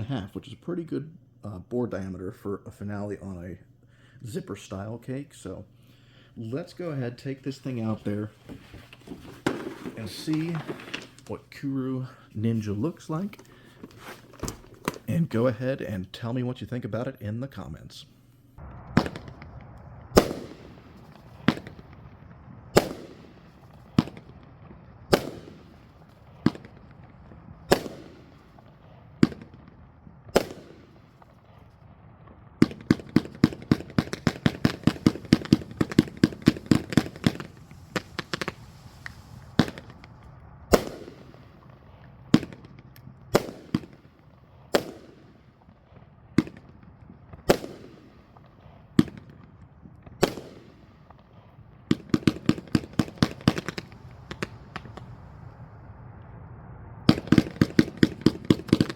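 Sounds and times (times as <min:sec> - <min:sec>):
firework shots banging: 0:06.8 - 0:11.3, 0:18.6 - 0:55.7, 0:57.1 - 0:58.9.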